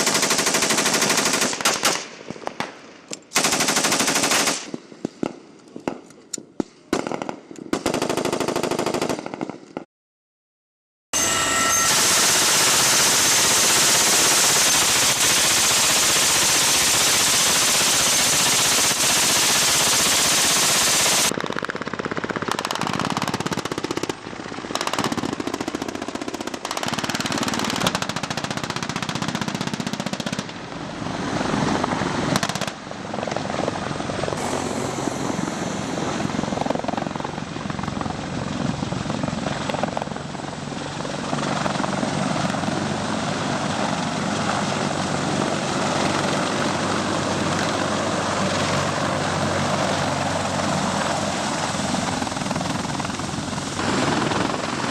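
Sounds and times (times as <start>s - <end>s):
helicopter: 0.0s - 1.6s, 11.2s - 54.9s
rifle and machine-gun fire: 0.0s - 4.8s, 6.9s - 9.6s, 11.9s - 30.6s, 52.0s - 54.9s
loud steady rush: 11.2s - 21.4s, 30.5s - 54.9s.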